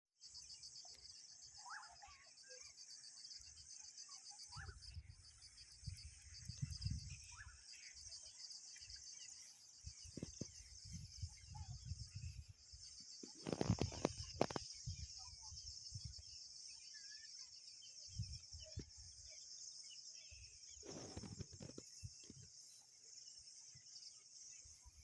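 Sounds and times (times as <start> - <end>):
insects trilling: 0.2 - 25.0.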